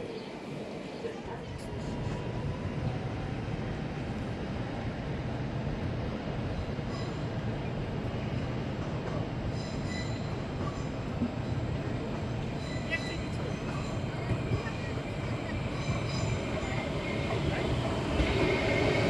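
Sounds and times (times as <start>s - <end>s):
train rumbling: 0.0s - 19.0s
train wheel squeals: 6.6s - 7.6s, 9.4s - 11.2s, 12.2s - 19.0s.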